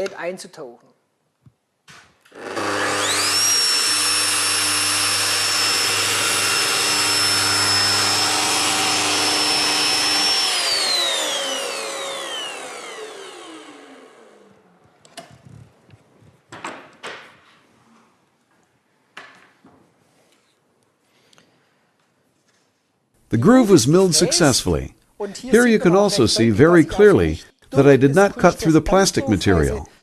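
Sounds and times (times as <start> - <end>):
milling machine motor whine: 2.4 - 14.5.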